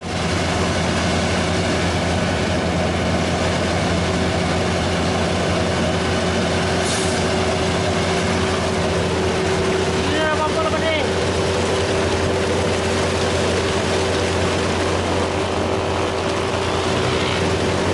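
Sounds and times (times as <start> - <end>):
diesel engine running: 0.0 - 17.9
brief hiss: 6.8 - 7.3.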